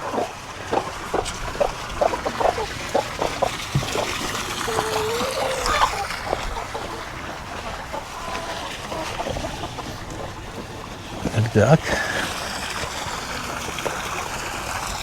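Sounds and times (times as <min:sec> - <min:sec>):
water splashing and trickling: 0:00.0 - 0:15.0.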